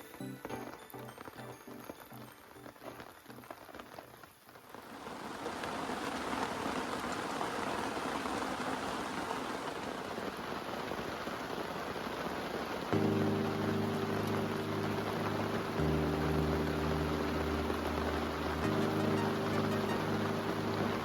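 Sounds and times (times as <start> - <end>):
background music: 0.0 - 3.5, 13.0 - 21.0
steady rain pattering: 0.0 - 21.0.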